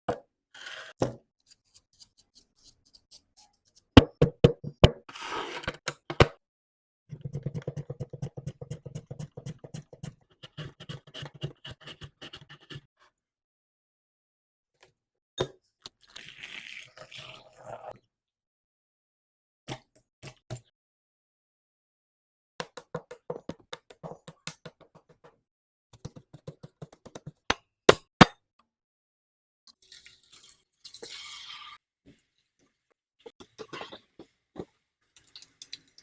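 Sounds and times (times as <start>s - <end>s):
knife chopping on cutting board: 4.0s - 5.0s.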